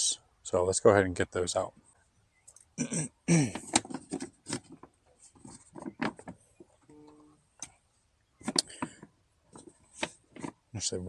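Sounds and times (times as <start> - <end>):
brief steady tone: 6.9 - 7.4.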